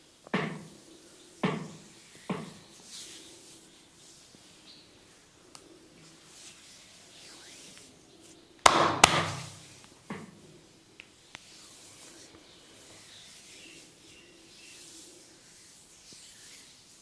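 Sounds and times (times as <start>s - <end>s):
sharp smacks on head: 8.6s - 9.6s
light taps on head: 8.6s - 10.3s.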